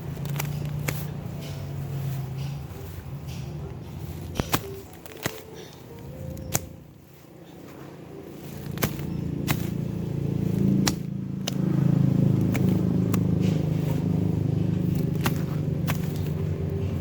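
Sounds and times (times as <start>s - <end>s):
sharp clicks: 0.0s - 7.0s, 8.3s - 17.0s
motor humming: 0.0s - 17.0s.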